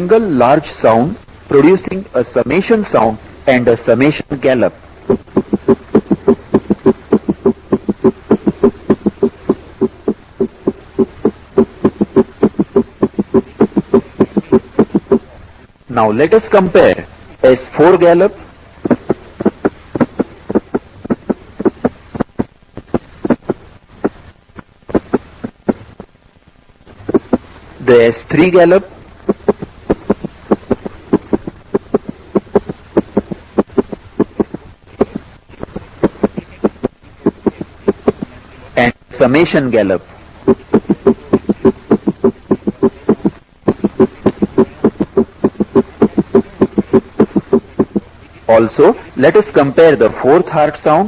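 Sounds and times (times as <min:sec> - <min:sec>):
faint steady hum: 0:00.0 - 0:51.0
heartbeat through stethoscope: 0:04.9 - 0:15.4, 0:18.8 - 0:26.2, 0:26.9 - 0:28.1, 0:29.2 - 0:38.4, 0:40.4 - 0:48.2.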